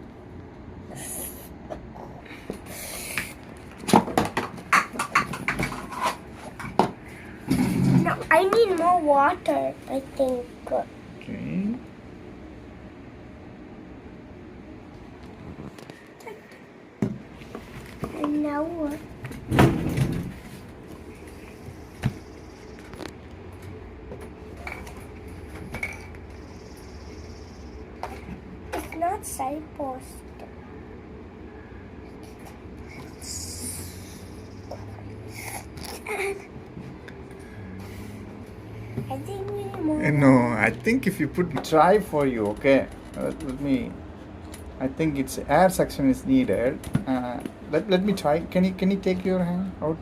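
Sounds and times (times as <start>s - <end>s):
low steady hum: 0.0s - 50.0s
cups clattering: 4.0s - 7.0s.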